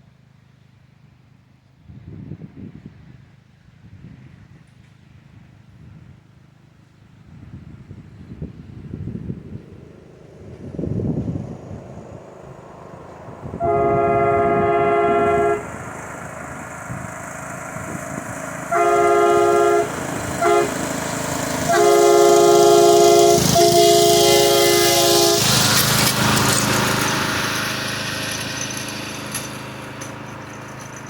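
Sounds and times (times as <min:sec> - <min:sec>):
air horn blasting chord: 0:11.7 - 0:26.6.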